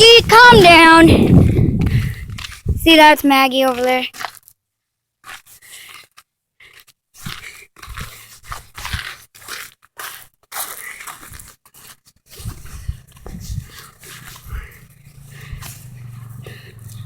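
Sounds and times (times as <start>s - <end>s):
footsteps crunching in snow: 6.7s - 17.0s.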